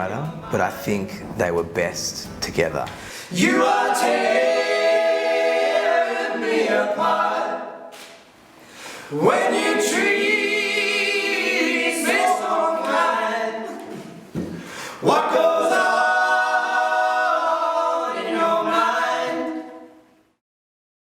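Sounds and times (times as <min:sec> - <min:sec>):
group singing a cappella chords: 0:03.0 - 0:08.1, 0:08.7 - 0:20.2.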